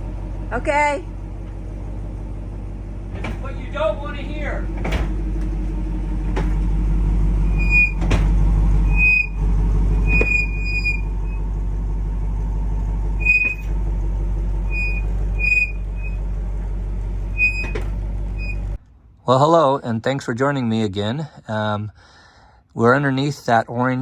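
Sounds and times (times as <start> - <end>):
car engine running: 0.0 - 18.8
loud bangs from drivetrain: 4.7 - 10.9
short high-pitched squeaks: 7.4 - 8.1, 8.8 - 9.4, 10.0 - 11.4, 13.2 - 13.7, 14.7 - 16.2, 17.3 - 18.8.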